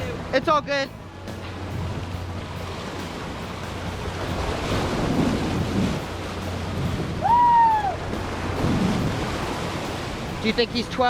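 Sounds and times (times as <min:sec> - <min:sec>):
surf washing against rocks: 0:00.0 - 0:11.0
wind buffeting microphone: 0:00.0 - 0:11.0.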